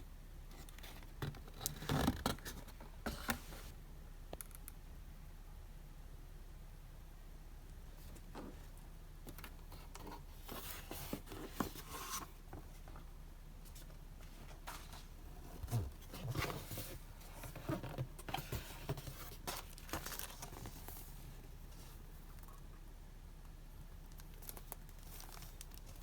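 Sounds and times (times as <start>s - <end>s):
paper and plastic rustling: 7.9s - 22.4s, 24.1s - 26.0s.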